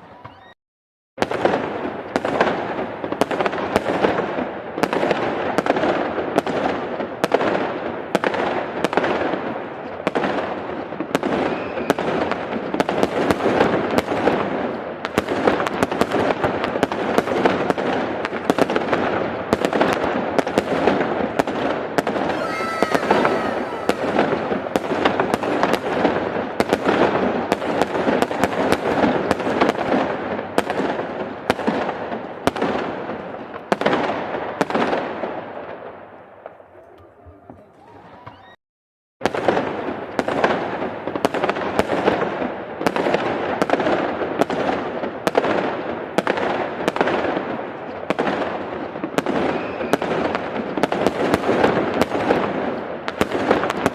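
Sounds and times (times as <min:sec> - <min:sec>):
fireworks bangs: 0:22.2 - 0:27.8.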